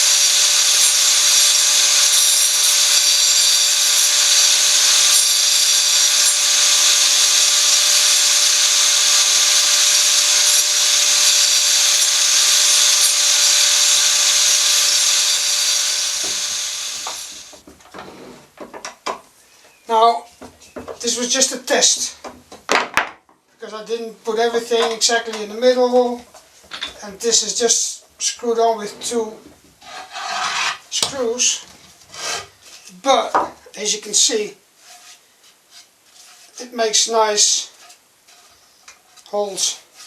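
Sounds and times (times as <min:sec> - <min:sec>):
blade spinning down: 0:00.0 - 0:17.6
angle grinder cutting wood: 0:00.0 - 0:18.8, 0:28.4 - 0:33.0.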